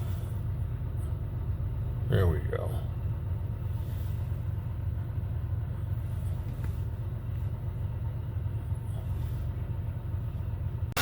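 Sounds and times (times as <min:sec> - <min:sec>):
car engine idling: 0:00.0 - 0:11.0.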